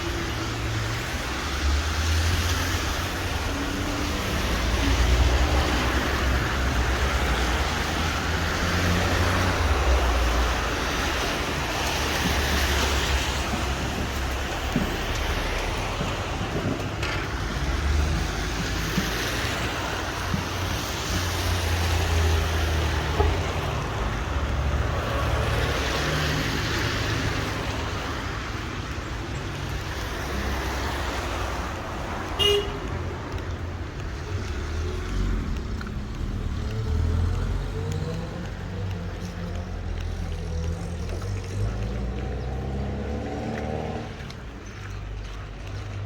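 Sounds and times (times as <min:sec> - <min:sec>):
cars passing on wet road: 0:00.0 - 0:46.0
short car horn toot: 0:32.4 - 0:32.8.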